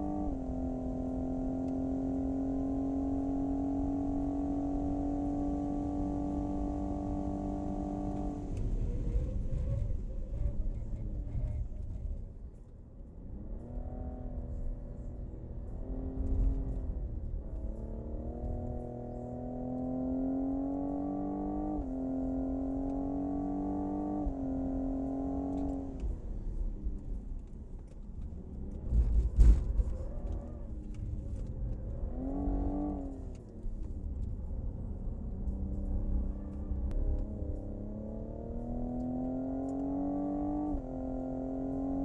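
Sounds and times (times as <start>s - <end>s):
car engine accelerating: 0.0s - 12.2s, 13.1s - 42.0s.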